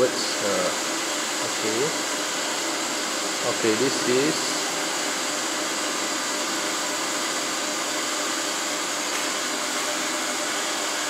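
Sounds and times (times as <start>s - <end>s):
machinery whirring hiss: 3.4s - 5.3s.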